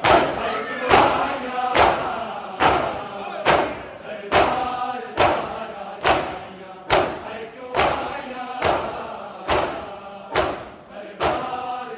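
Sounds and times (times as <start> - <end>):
unison chest-beating strikes: 0.0 - 11.7
voices chanting: 0.0 - 11.9.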